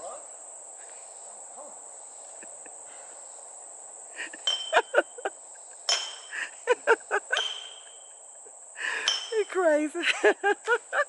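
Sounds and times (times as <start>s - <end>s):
insects droning: 0.0s - 11.0s
sharp clinks: 4.4s - 5.2s, 5.9s - 6.6s, 7.3s - 8.3s, 9.0s - 9.6s.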